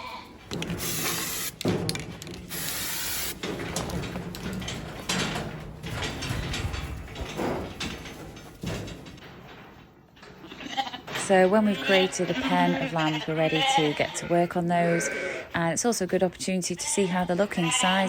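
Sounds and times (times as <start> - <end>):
shuffling: 0.0 - 10.2
knocks: 0.5 - 9.9
aerosol spray hissing: 0.8 - 1.5, 2.5 - 3.4.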